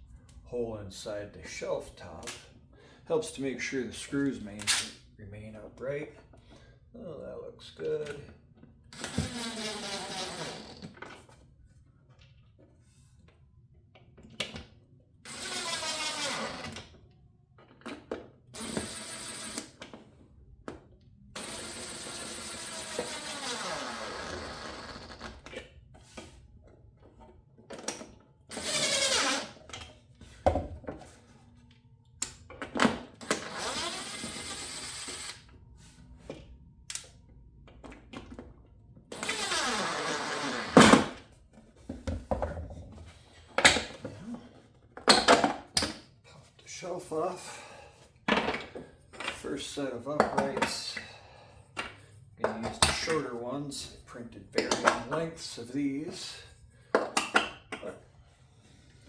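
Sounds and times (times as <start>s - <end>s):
cordless drill driving screws: 15.3s - 16.7s, 18.6s - 19.8s, 28.5s - 29.5s, 33.2s - 35.4s.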